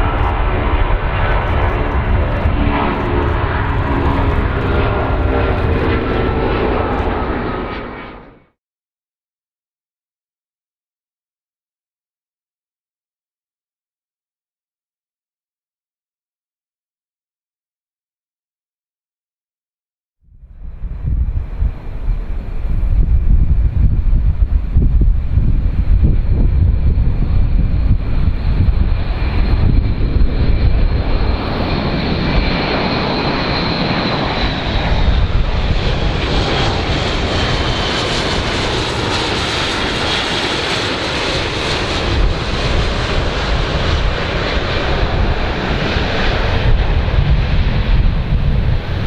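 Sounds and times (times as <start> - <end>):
wind buffeting microphone: 0.0 - 7.9, 20.3 - 49.0
aircraft engines roaring: 0.0 - 8.5, 20.3 - 49.0.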